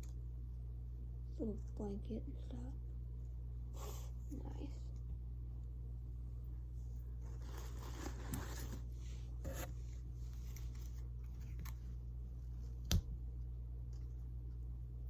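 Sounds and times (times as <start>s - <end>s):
low hum: 0.0s - 15.0s
packaging rustling and crinkling: 7.2s - 8.9s.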